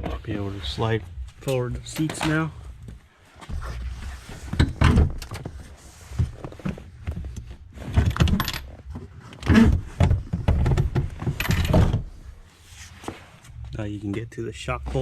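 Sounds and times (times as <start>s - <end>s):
metallic rattling and clinking: 11.2s - 12.0s.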